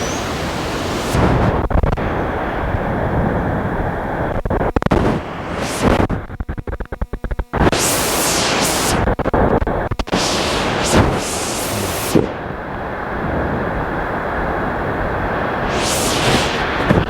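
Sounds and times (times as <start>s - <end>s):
large waterfall rushing: 0.0s - 2.2s
wind buffeting microphone: 0.0s - 6.4s, 10.7s - 17.0s.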